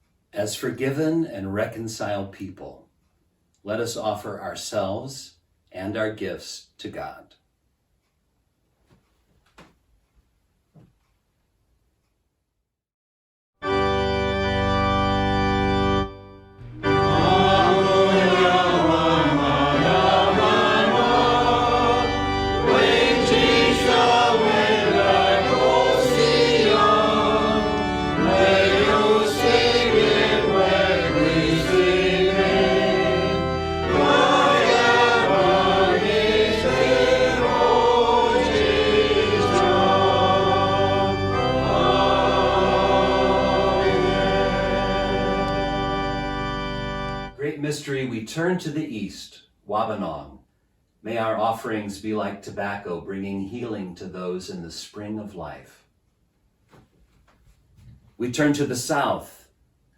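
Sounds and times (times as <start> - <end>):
held organ chord: 13.6 - 47.7
voices singing a hymn: 16.6 - 47.3.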